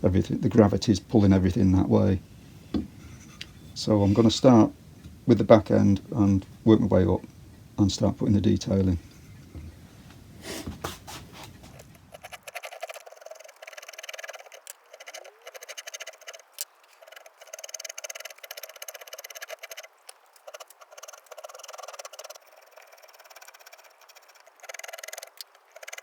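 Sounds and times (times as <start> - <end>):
carving tools scraping wood: 10.5 - 26.0.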